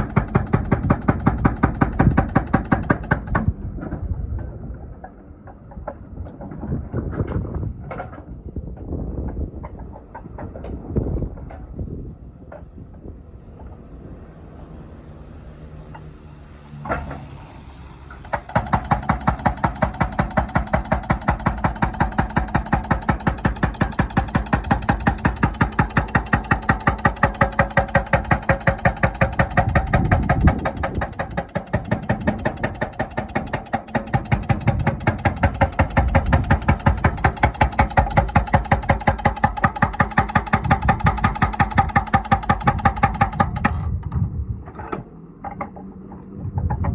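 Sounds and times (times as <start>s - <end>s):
hydraulic breaker hammer pounding: 0.0s - 6.7s, 18.1s - 44.0s
excavator engine running: 9.3s - 46.9s.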